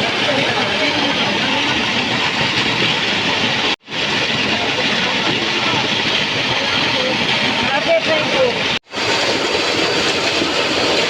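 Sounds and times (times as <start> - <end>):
loud steady rushing noise: 0.0 - 11.0.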